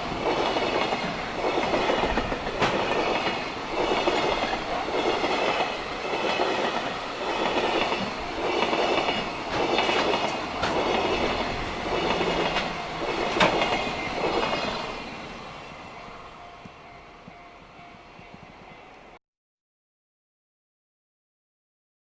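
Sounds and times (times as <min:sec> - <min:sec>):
train wheels clattering over rail joints: 0:00.0 - 0:15.2.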